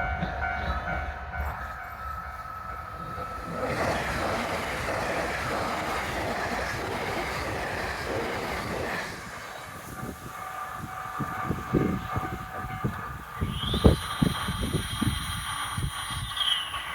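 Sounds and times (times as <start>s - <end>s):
crossing warning bell ringing: 0.0s - 5.4s, 9.7s - 16.3s
train wheels passing: 0.0s - 16.9s.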